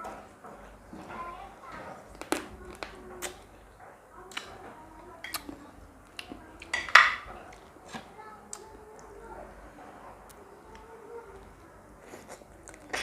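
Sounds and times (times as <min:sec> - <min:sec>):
dishes and utensils clinking: 0:06.6 - 0:08.1.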